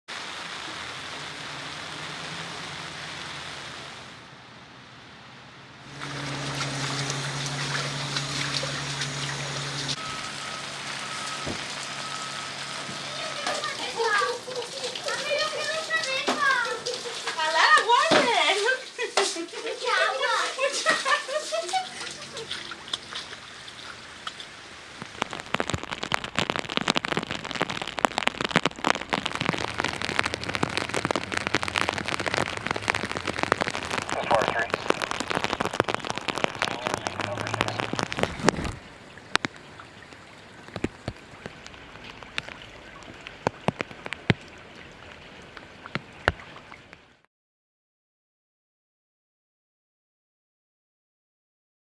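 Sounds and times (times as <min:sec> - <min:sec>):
rain and running floodwater: 0:00.1 - 0:04.4, 0:05.8 - 0:47.3
steady low hum: 0:04.7 - 0:12.8.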